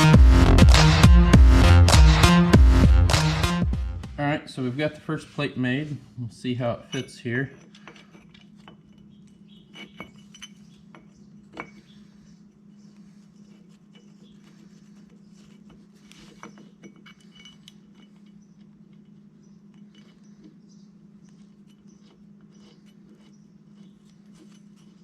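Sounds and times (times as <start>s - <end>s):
steady low hum: 0.0s - 25.0s
metal plate and bolts clinking: 6.8s - 12.0s, 13.2s - 20.6s.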